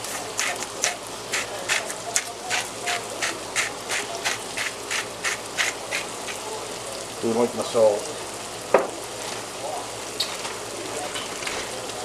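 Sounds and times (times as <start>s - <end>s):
salt sprinkled into pot: 0.0s - 6.5s.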